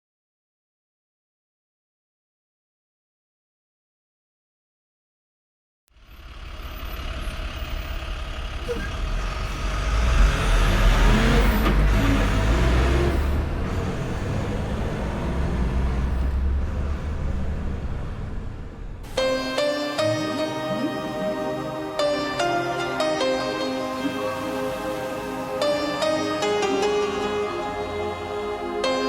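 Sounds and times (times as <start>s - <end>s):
diesel bus engine droning: 5.9s - 29.0s.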